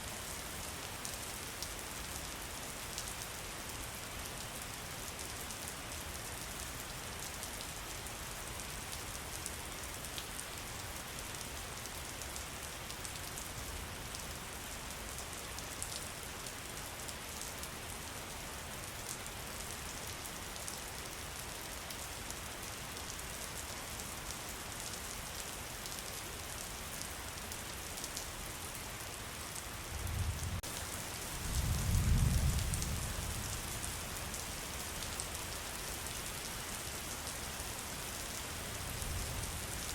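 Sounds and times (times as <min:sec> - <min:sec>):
steady rain falling: 0:00.0 - 0:39.9
low rumble of thunder: 0:30.0 - 0:30.6, 0:31.4 - 0:33.7.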